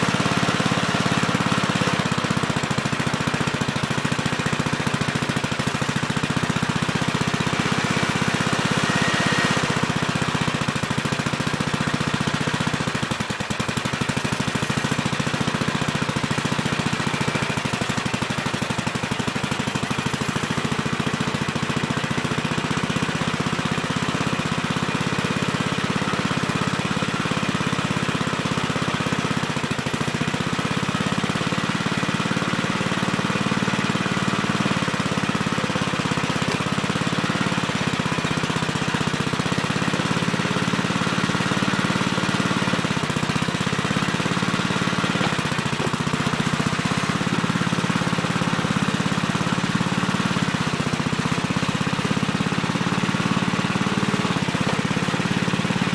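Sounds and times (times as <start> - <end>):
backhoe engine running: 0.0 - 55.9.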